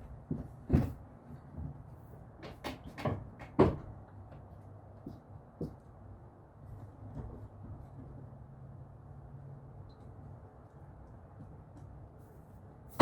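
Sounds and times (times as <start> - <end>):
tools knocking and clunking: 2.4 - 4.0.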